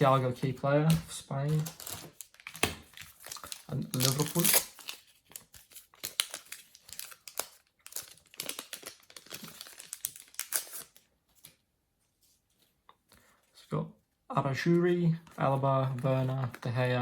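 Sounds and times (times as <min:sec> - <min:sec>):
foil packet tearing and crinkling: 0:01.5 - 0:11.0.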